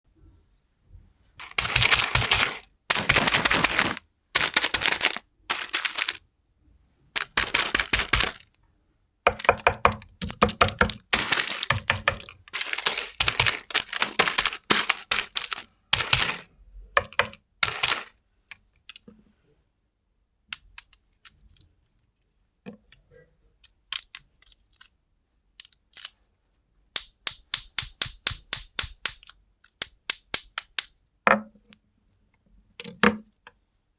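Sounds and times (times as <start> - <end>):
plastic wrappers crinkling: 1.4 - 6.2, 7.2 - 8.5, 9.3 - 18.1.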